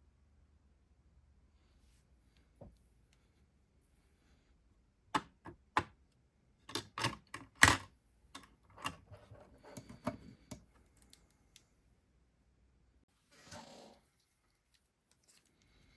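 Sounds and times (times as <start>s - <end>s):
clicks and taps of computer parts: 5.2s - 6.0s.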